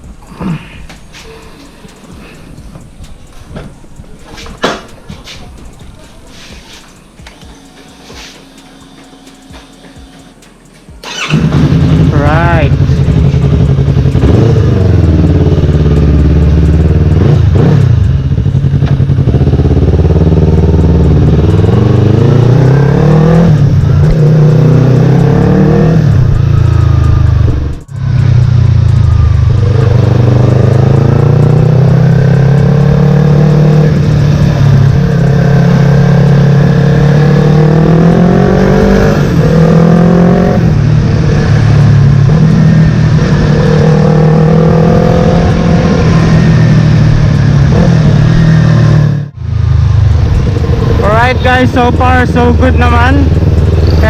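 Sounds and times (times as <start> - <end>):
motorcycle engine revving: 11.0 - 54.0.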